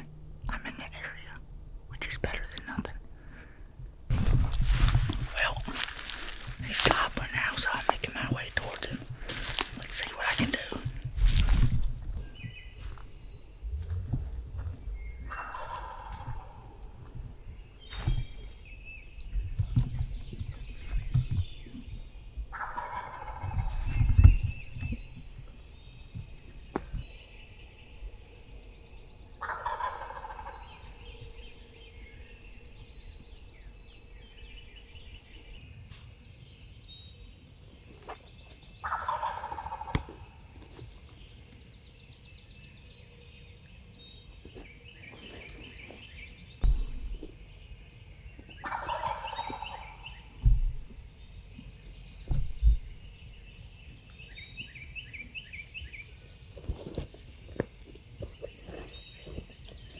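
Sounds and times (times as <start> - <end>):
sharp low thumps: 0.0 - 22.5, 46.6 - 47.7, 50.4 - 53.4
small birds chirping: 0.0 - 59.9
turkey gobbling: 15.3 - 16.6, 22.5 - 23.5, 29.4 - 30.6, 38.9 - 39.9, 48.6 - 50.0.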